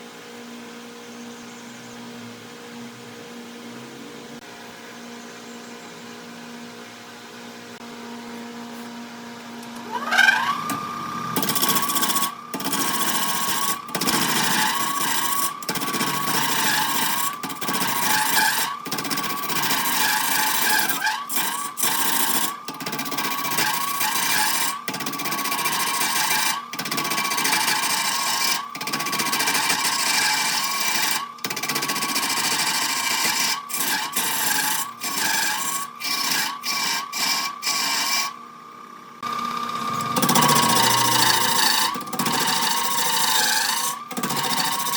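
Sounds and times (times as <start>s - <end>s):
lathe motor whine: 7.8s - 38.4s, 39.2s - 44.9s
turning tool cutting wood: 9.8s - 38.4s, 39.2s - 44.9s.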